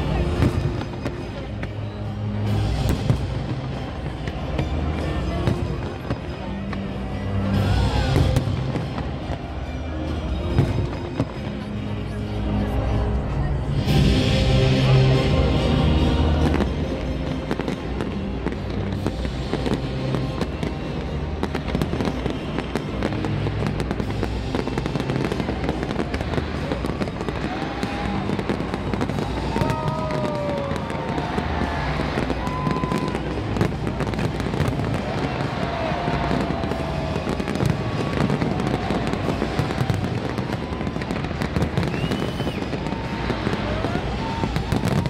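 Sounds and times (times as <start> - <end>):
fireworks crackling: 0.0 - 45.0.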